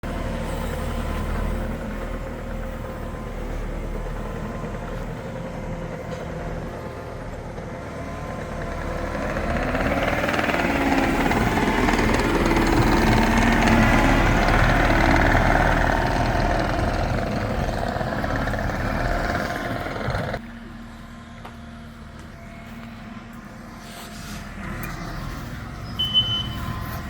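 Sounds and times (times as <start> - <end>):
skid steer engine running: 0.0 - 27.0.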